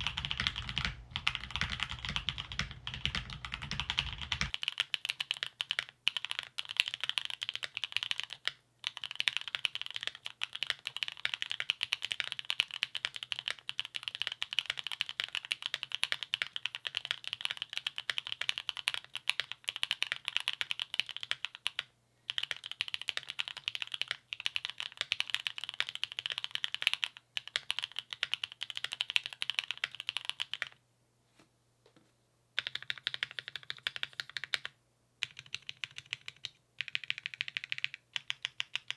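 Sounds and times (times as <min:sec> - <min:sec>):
mechanical keyboard typing: 0:00.0 - 0:30.8, 0:32.6 - 0:38.9.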